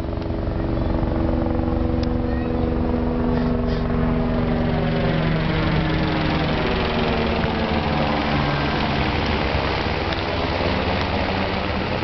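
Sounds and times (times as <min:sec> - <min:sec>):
engine humming: 0:00.0 - 0:12.0
rushing background noise: 0:00.0 - 0:12.0.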